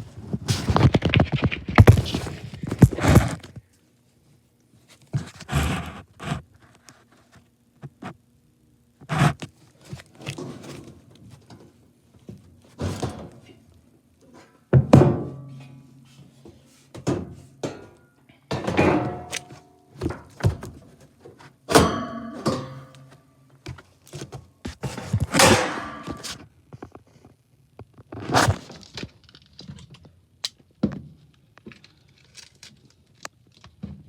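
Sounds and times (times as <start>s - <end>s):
sheet metal thunks and clanks: 18.5s - 19.4s, 21.7s - 23.0s, 25.3s - 26.4s.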